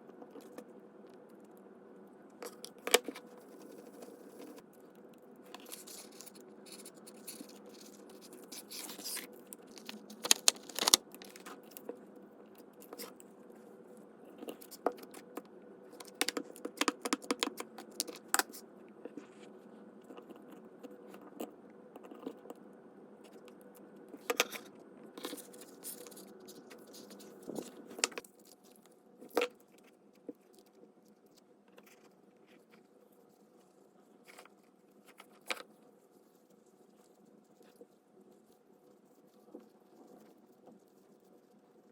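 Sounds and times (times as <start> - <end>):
faint steady hum: 0.0 - 41.9
paper rustling: 5.6 - 11.6, 25.2 - 28.2.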